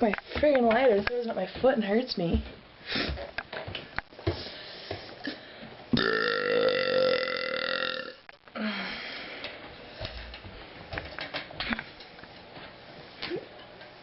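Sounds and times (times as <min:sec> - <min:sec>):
girl belching: 0:06.0 - 0:08.2.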